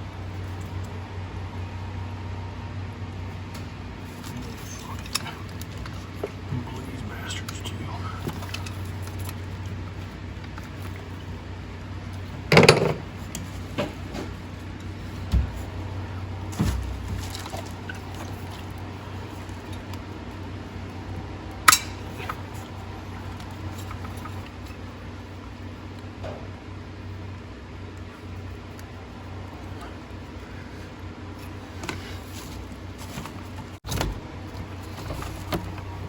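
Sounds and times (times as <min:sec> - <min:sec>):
steady low hum: 0:00.0 - 0:36.0
metallic clanks of tools: 0:21.7 - 0:22.3.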